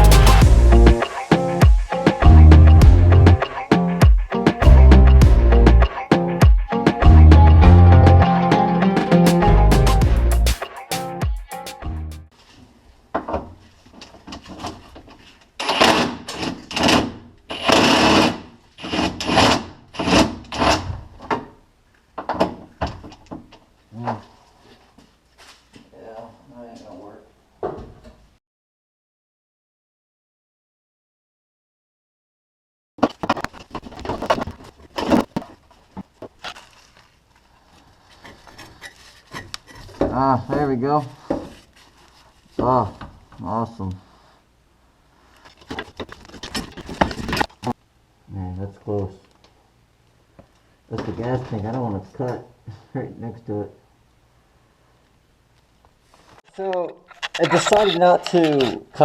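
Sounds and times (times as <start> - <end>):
metal parts clanking and scraping: 45.4 - 47.8, 57.1 - 58.8.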